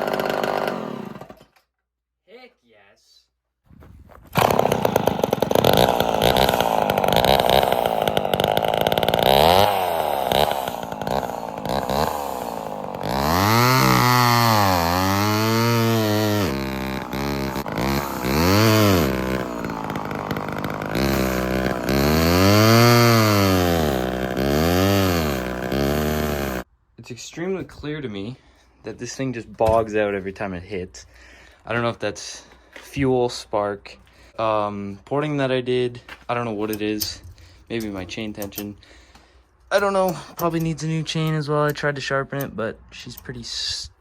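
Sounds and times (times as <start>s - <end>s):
chainsaw revving: 0.0s - 1.4s, 4.4s - 26.7s.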